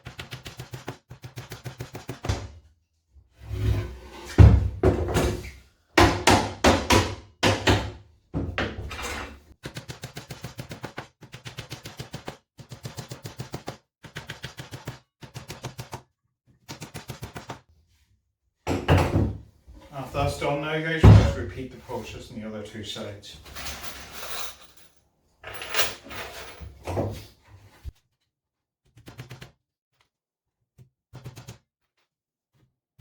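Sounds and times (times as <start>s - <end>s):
hammer driving nails into wood: 6.0s - 7.9s.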